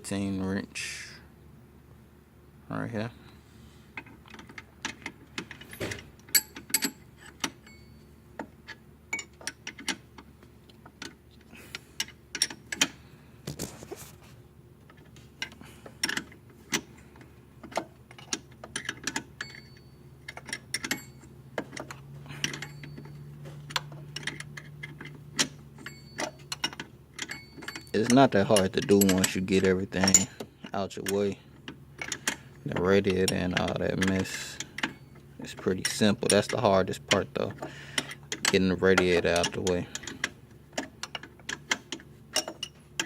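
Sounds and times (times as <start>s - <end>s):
wrench clicking on metal bolts: 17.6s - 30.4s, 32.0s - 43.0s.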